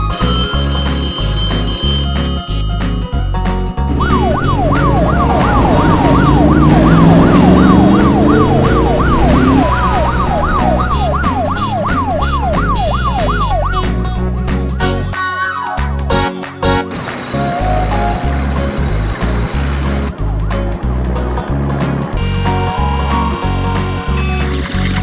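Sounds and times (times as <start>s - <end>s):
background music: 0.0s - 25.0s
low rising tone: 3.8s - 14.4s
siren sweeping up and down: 3.9s - 14.0s.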